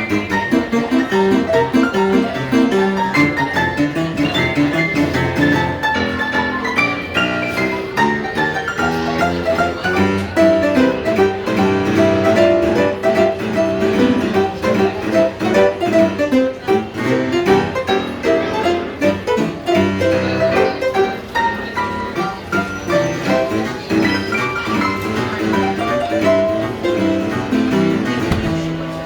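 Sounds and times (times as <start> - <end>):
instrumental music: 0.0 - 29.0.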